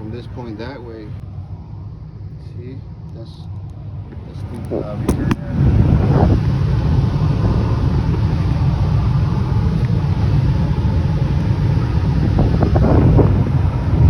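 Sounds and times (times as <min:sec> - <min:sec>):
low rumble of rushing air: 0:00.0 - 0:14.0.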